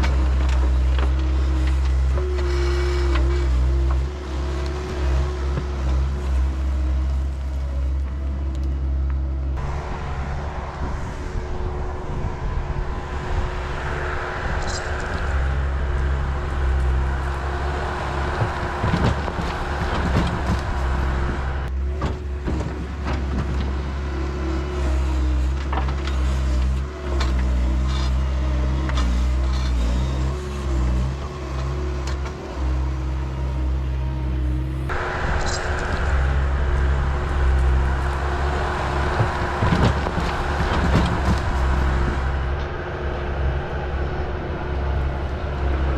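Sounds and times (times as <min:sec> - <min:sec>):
excavator diesel engine running: 0:00.0 - 0:45.9.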